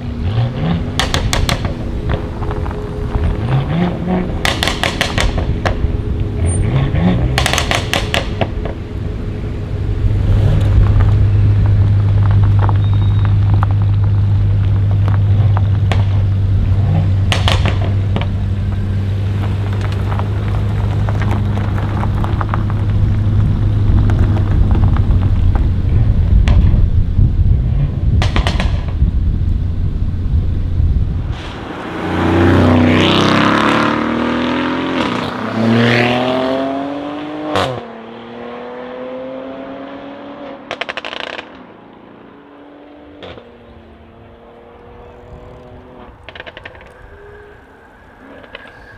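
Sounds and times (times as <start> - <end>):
exhaust crackles and pops: 0.0 - 32.0, 40.5 - 42.2, 43.1 - 44.4, 45.0 - 48.9
car engine droning: 0.0 - 48.9.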